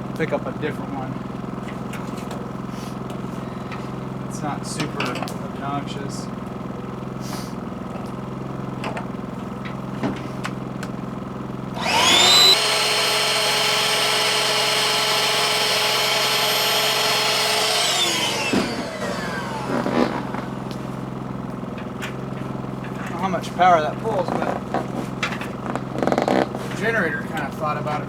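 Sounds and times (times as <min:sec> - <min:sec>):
portable generator humming: 0:00.0 - 0:28.0
electric inflator whine: 0:11.7 - 0:22.6, 0:24.5 - 0:26.8.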